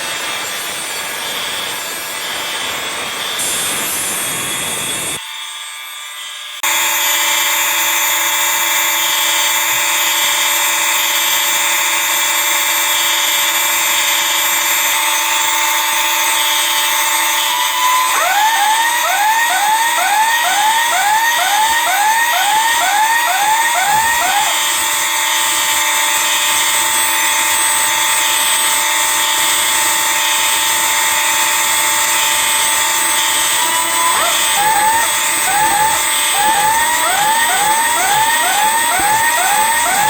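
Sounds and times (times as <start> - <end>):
fire alarms blaring: 0.0 - 40.0
rising electronic sweep: 33.6 - 40.0.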